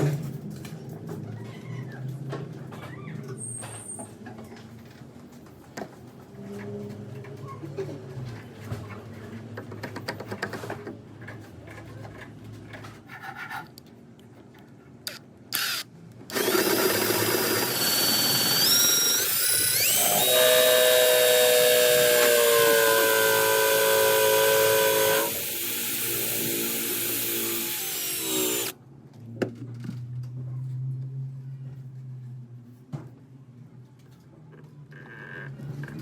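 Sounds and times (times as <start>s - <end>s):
power drill whining: 15.6s - 28.7s.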